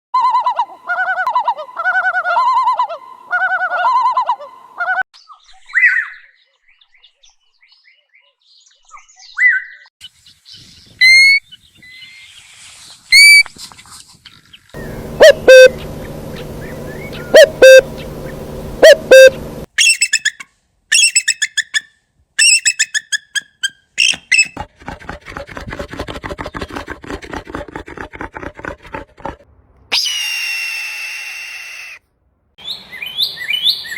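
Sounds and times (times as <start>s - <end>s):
low hum: 14.8s - 19.7s
warbling birdsong: 14.8s - 19.7s
rapid bird trill: 14.8s - 20.4s
sharp bird calls: 14.8s - 20.4s
bird whistles: 14.8s - 24.6s.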